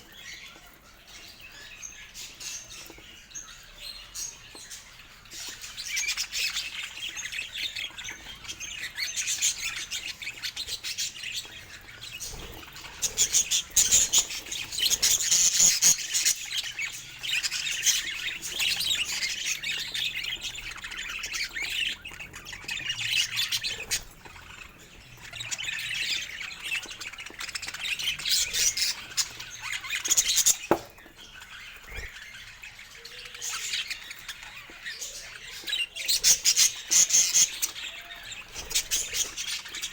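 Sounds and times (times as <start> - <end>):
budgerigars chattering and squawking: 0.0 - 39.9.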